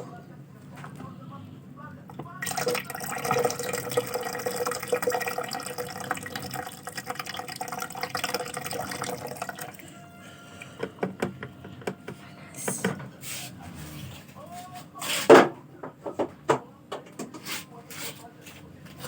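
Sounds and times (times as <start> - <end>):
liquid dripping: 2.2 - 9.9
liquid pouring through strainer: 2.4 - 9.9.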